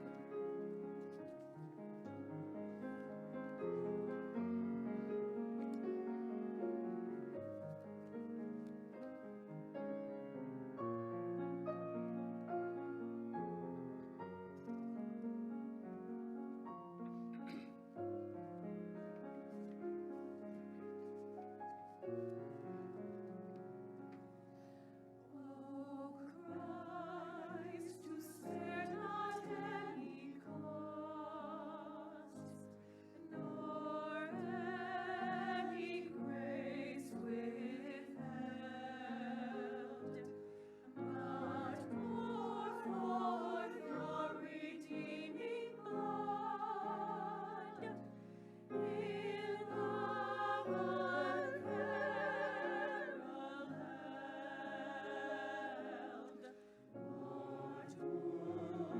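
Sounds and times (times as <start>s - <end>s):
choir singing sacred music: 25.3s - 58.9s.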